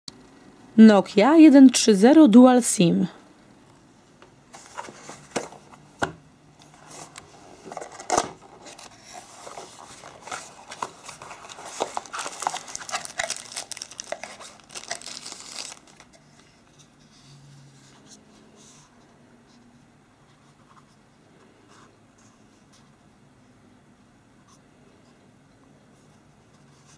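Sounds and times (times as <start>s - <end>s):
packaging crinkling and rustling: 4.5s - 5.8s, 6.6s - 16.6s
packaging clicks and taps: 10.2s - 16.1s.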